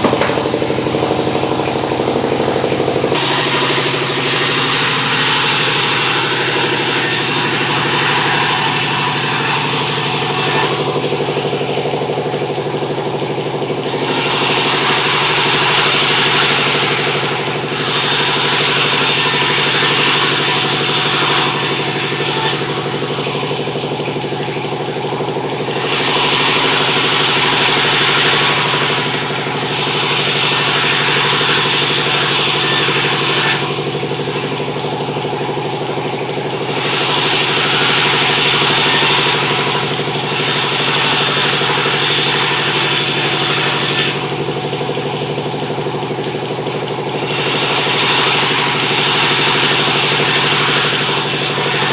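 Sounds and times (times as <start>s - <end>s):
saw hissing: 0.0s - 11.6s, 13.8s - 24.3s, 25.6s - 35.3s, 36.0s - 44.6s, 47.2s - 51.9s
machine drive humming: 0.0s - 47.6s.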